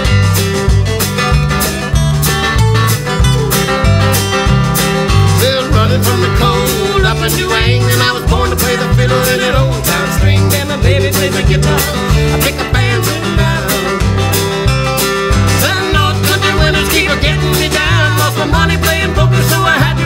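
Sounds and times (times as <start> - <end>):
folk-rock band playing: 0.0 - 20.0
lead melody line: 0.0 - 20.0.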